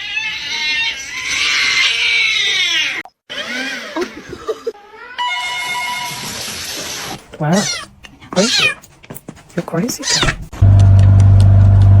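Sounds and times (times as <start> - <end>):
cat crying harshly: 0.0 - 6.3, 6.9 - 8.9, 10.0 - 10.5
cat meowing: 7.4 - 8.9, 9.9 - 10.5.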